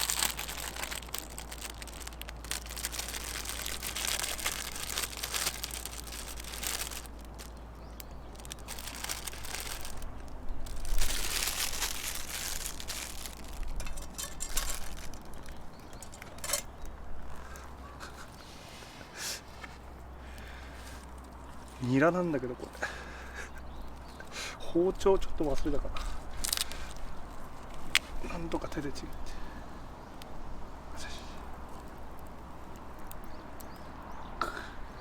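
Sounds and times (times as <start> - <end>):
plastic packaging crinkling: 0.0 - 16.8, 26.4 - 28.0.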